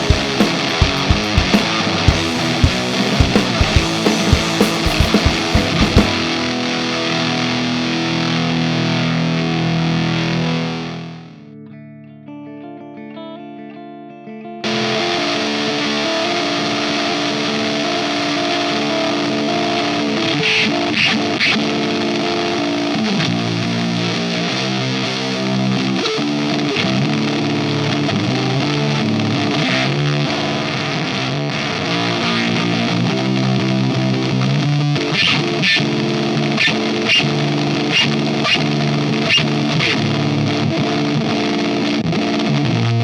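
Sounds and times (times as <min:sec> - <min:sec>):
drum hits: 0:00.0 - 0:06.7
fuzzed electric guitar chords: 0:00.0 - 0:43.0.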